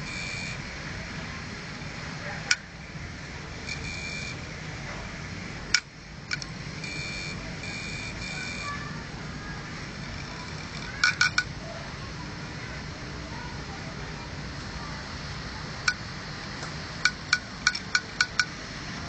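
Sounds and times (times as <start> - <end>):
hard drive motor hum: 0.0 - 4.5, 5.2 - 11.6
high-pitched beeping tones: 3.7 - 4.4, 6.8 - 8.8
hard drive clicks: 15.8 - 18.6.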